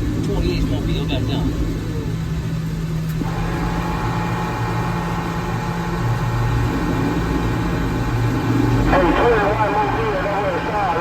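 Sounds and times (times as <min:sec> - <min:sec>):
vehicle engine idling: 0:00.0 - 0:11.0
radio static hiss: 0:08.8 - 0:11.0.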